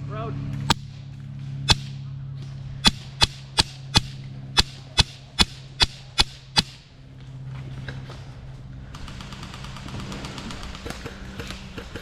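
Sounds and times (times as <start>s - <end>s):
steady low hum: 0.0s - 12.0s
airsoft rifle shots: 1.7s - 2.0s, 2.8s - 6.9s.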